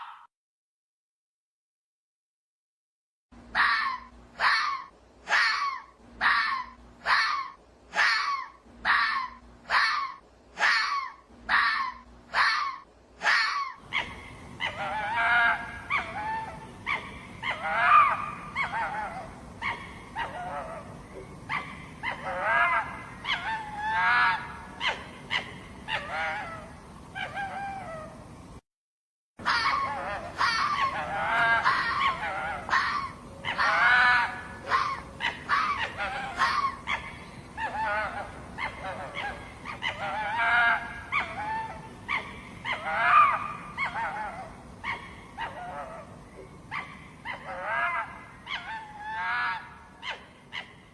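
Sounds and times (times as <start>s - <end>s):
fox yelping: 0.0s - 0.3s, 3.5s - 28.2s, 29.4s - 50.9s.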